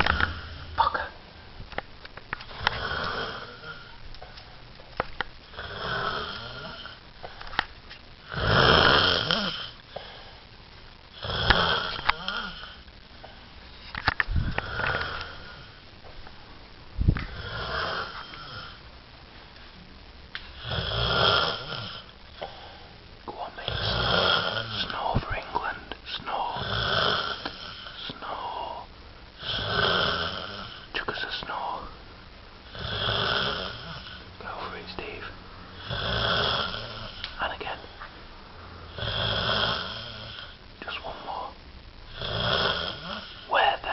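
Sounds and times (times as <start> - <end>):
person snoring: 0.0 - 1.2, 2.5 - 4.0, 5.5 - 7.0, 8.2 - 10.2, 11.1 - 12.8, 14.4 - 15.8, 17.3 - 18.8, 20.5 - 22.6, 23.6 - 25.2, 26.2 - 31.9, 32.7 - 38.0, 38.9 - 43.9.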